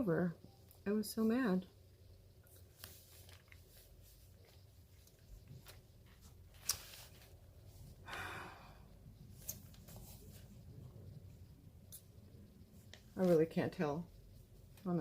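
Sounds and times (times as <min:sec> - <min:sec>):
person exhaling breath: 0:08.0 - 0:09.0.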